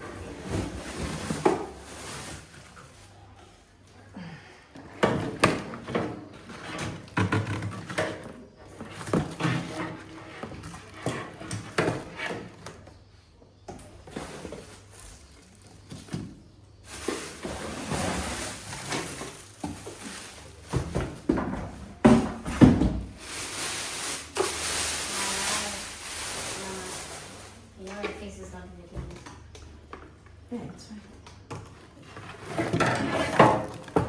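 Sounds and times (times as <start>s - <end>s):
plastic parts knocking and clattering: 5.0s - 12.7s, 14.1s - 23.2s, 31.4s - 34.0s
packaging rustling: 14.1s - 16.1s, 16.7s - 21.3s, 23.1s - 27.8s.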